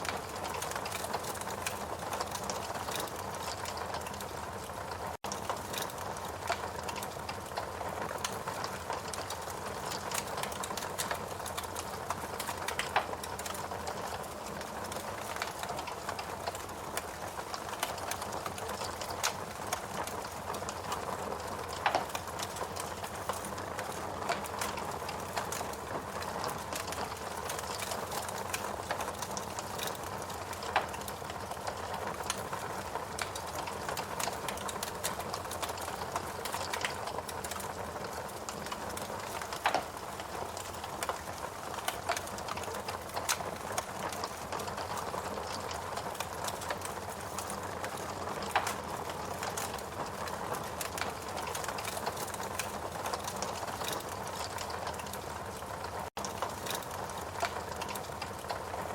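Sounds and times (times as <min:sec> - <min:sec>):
fire popping: 0:00.0 - 0:58.9
logs crackling in a fireplace: 0:00.0 - 0:58.9.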